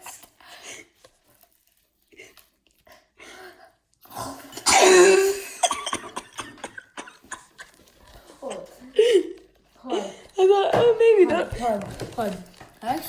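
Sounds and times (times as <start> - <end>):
faint mouth and handling noises: 0.0 - 4.6
person coughing: 4.6 - 7.7.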